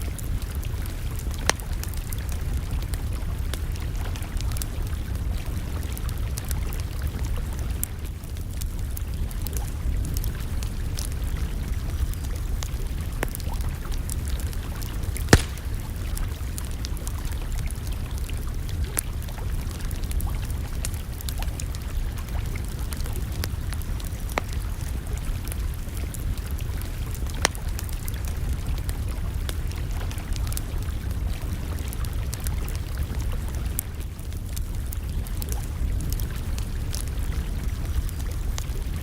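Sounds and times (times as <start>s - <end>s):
campfire crackling: 8.1s - 39.0s
sharp pops of fire: 15.3s - 16.0s.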